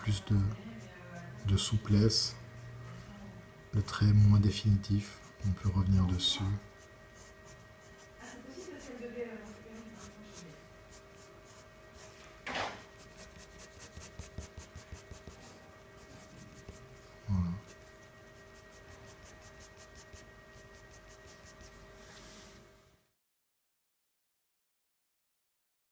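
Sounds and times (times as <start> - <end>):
faint steady hum: 0.0 - 23.2
pencil scratching on paper: 0.7 - 1.9, 6.4 - 22.2.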